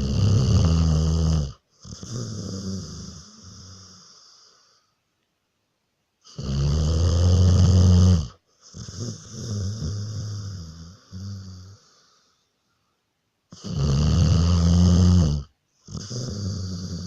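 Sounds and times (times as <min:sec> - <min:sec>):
rattling snoring: 0:00.0 - 0:04.3, 0:06.3 - 0:12.0, 0:13.5 - 0:17.0.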